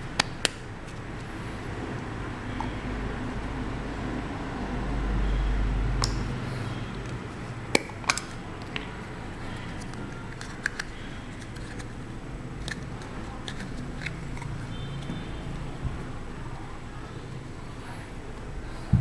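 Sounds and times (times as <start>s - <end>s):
plastic tools clicking and tapping: 0.2s - 1.3s, 6.0s - 6.4s, 7.0s - 15.9s.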